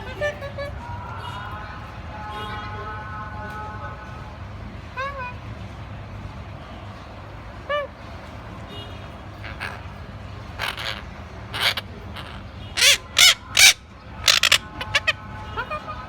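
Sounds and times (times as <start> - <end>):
parrot harsh calls: 9.4 - 16.0.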